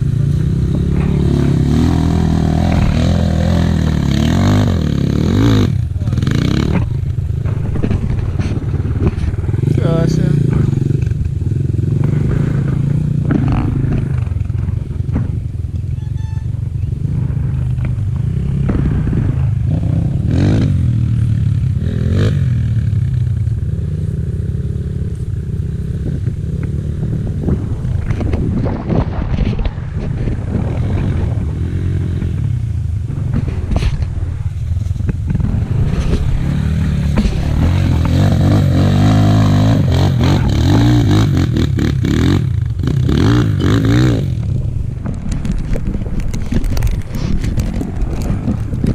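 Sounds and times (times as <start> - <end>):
motorcycle engine revving: 0.0 - 48.9
knocks and clatter: 5.5 - 9.8, 10.4 - 16.0, 33.0 - 48.9.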